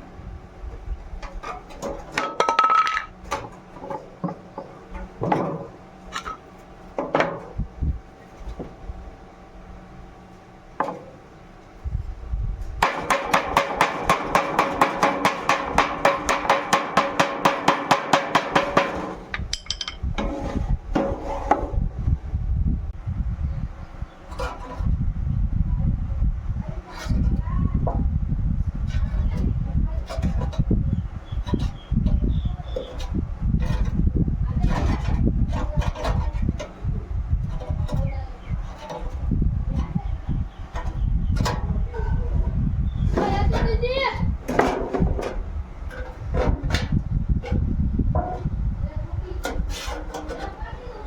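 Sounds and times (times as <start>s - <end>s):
hand tools knocking on tin can: 12.8s - 20.0s.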